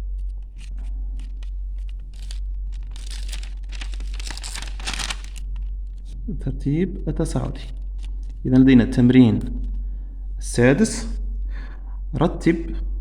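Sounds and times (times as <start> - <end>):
paper rustling and scratching: 0.0 - 6.2, 7.2 - 9.8
steady low hum: 0.0 - 13.0.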